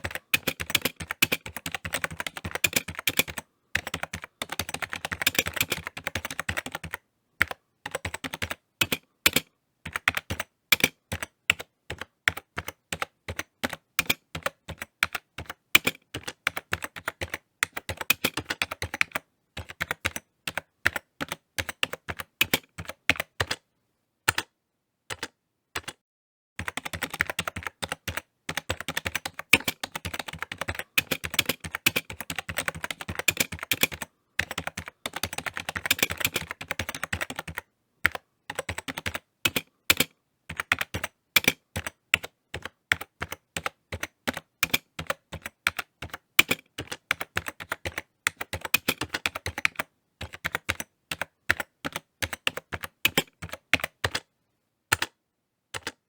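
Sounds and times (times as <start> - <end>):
computer keyboard typing: 0.0 - 23.6, 24.3 - 24.5, 25.1 - 26.0, 26.6 - 54.3, 54.9 - 56.0.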